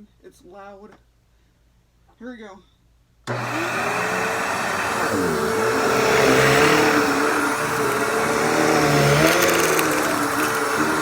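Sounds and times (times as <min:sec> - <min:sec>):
vacuum cleaner motor humming: 0:03.3 - 0:11.0.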